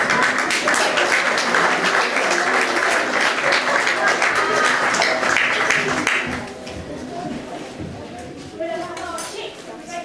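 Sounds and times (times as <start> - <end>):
audience applauding: 0.0 - 6.5.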